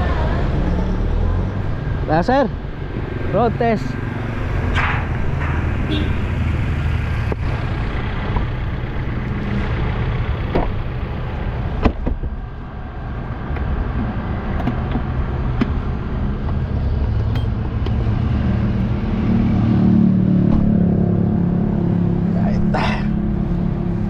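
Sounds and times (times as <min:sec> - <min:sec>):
road noise inside cabin: 0:00.0 - 0:24.0
van engine running: 0:06.3 - 0:19.2.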